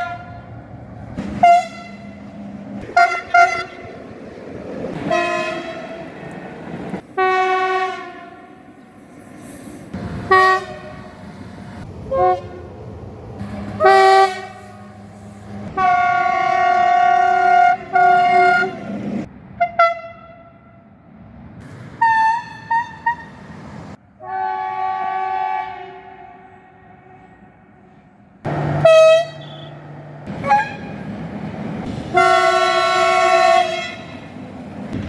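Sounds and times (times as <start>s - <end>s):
train horn blasts: 0.0s - 0.5s, 1.2s - 4.0s, 5.0s - 6.1s, 7.2s - 8.6s, 10.2s - 11.2s, 12.1s - 12.7s, 13.5s - 19.0s, 19.6s - 20.8s, 24.2s - 31.0s, 32.1s - 34.3s.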